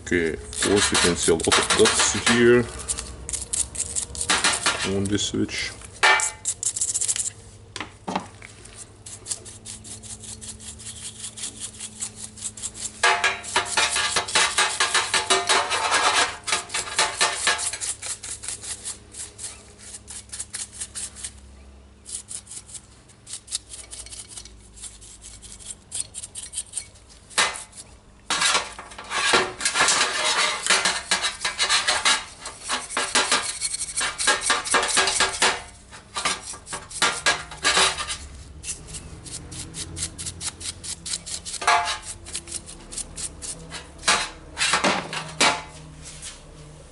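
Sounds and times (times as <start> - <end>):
small tool scraping a switch: 5.9 - 7.4, 9.0 - 21.4, 22.1 - 35.6, 36.2 - 43.9.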